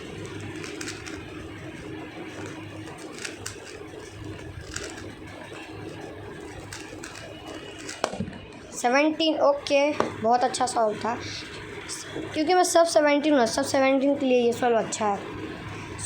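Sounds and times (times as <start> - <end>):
fan humming: 0.0 - 16.0
speed cube clicking: 0.1 - 1.5, 2.3 - 8.2.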